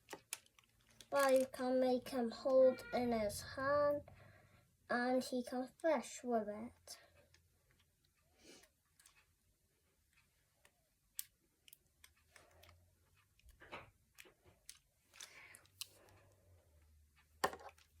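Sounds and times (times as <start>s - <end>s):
plastic toy clicks: 0.0s - 1.6s.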